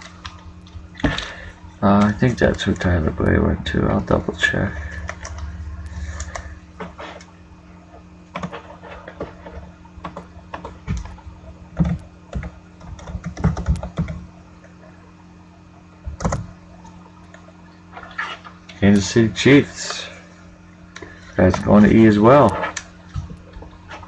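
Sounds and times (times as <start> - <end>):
keyboard typing clicks: 11.8 - 14.2, 16.1 - 16.5.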